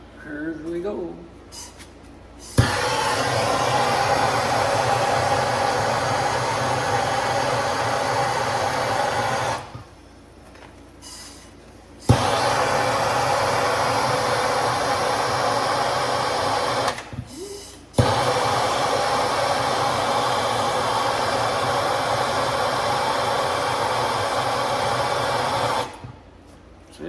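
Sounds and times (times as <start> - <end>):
torch flame hissing: 2.5 - 10.0, 12.0 - 26.0.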